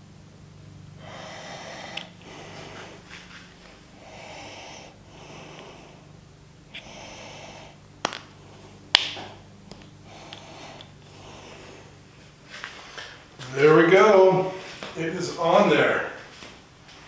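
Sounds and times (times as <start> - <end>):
person breathing through nose: 1.0 - 9.4, 10.0 - 13.3.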